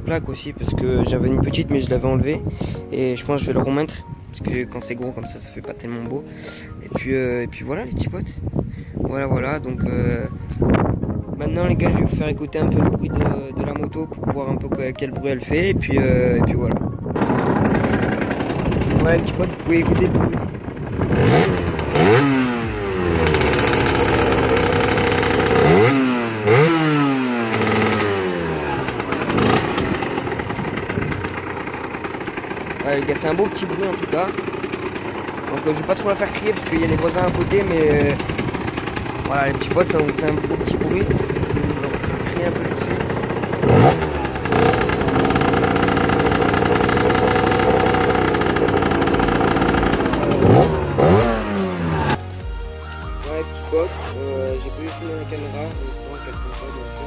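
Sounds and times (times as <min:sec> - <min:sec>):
motocross bike engine revving: 0:17.2 - 0:52.5.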